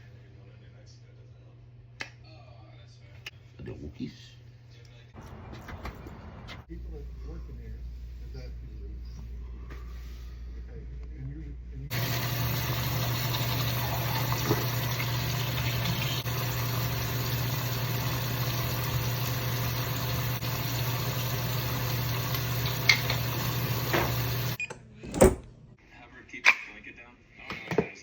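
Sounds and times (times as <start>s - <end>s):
appliance humming and hissing: 11.7s - 25.5s.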